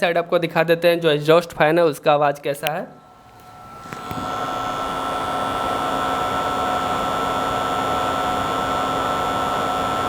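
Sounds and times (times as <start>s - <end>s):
cooling fan whirring: 2.9s - 10.0s.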